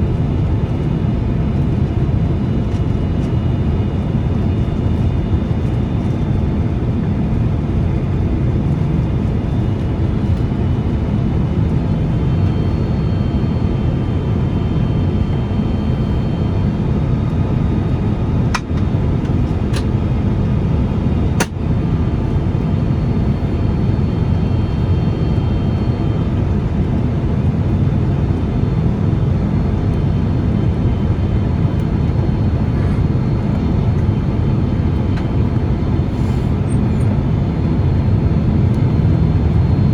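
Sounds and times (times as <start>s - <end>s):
jet engine cabin rumble: 0.0s - 39.9s
faint high whining tones: 11.7s - 18.9s.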